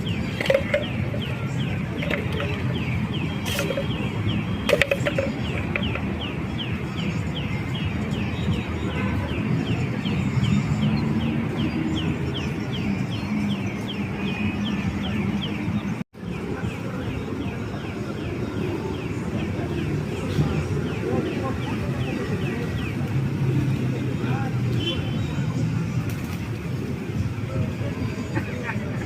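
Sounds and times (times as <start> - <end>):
bird chirping: 0.0 - 16.0.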